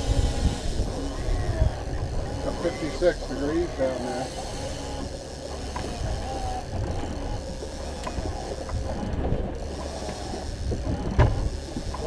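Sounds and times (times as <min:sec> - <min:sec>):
boat engine rumble: 0:00.0 - 0:12.0.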